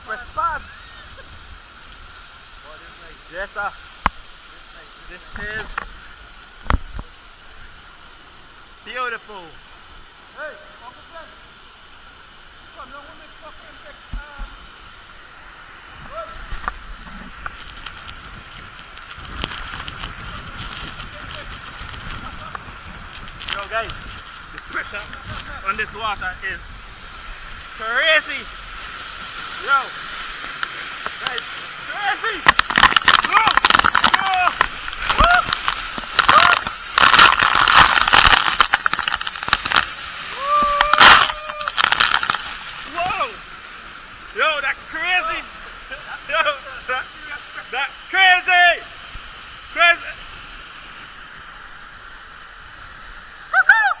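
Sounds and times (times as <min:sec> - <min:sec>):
waterfall rushing and splashing: 0:00.0 - 0:54.0
person whooping: 0:35.1 - 0:35.6, 0:40.3 - 0:41.8, 0:53.5 - 0:54.0.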